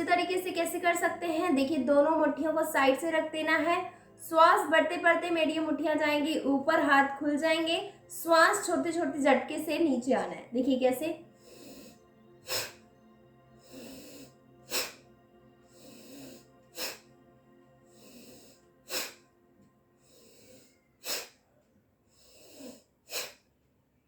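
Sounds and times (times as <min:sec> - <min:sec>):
woman breathing forcefully through nose: 0:11.3 - 0:12.9, 0:13.6 - 0:17.1, 0:17.8 - 0:19.3, 0:20.0 - 0:23.5.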